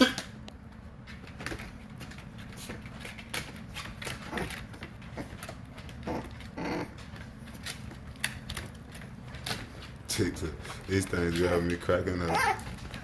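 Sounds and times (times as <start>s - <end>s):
puppies moving with light taps: 0.1s - 13.0s
puppy squeaks: 12.2s - 12.8s.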